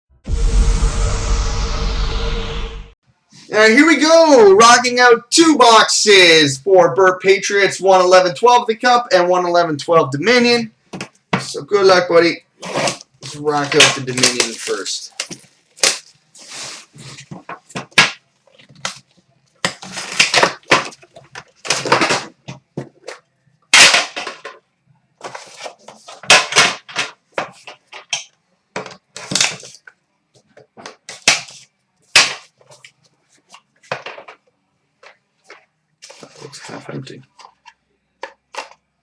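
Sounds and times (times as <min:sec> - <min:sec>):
plastic wrap crinkling and ripping: 0:12.6 - 0:17.7, 0:18.4 - 0:22.3
cardboard rustling: 0:12.6 - 0:23.3, 0:25.2 - 0:28.1, 0:35.0 - 0:37.8.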